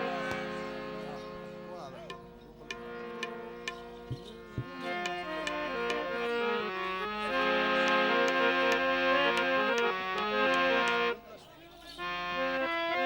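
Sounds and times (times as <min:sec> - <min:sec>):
harmonium melody: 0:00.0 - 0:13.0
tabla strokes: 0:01.9 - 0:06.3.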